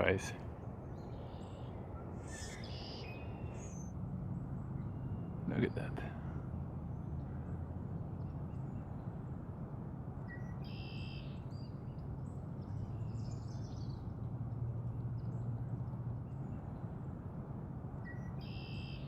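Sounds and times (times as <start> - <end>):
higher bird chirps: 1.1 - 3.9
bird calling: 1.2 - 3.9.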